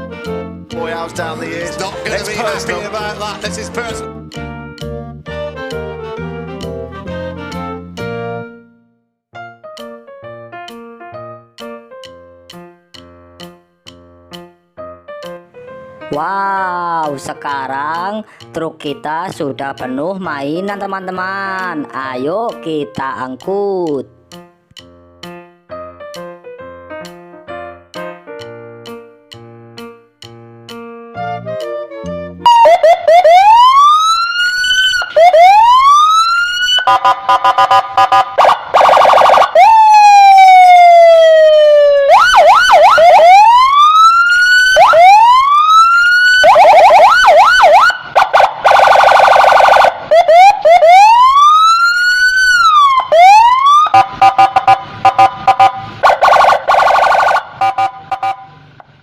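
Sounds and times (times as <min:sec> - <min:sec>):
electronic police siren: 0:32.5 - 0:58.6.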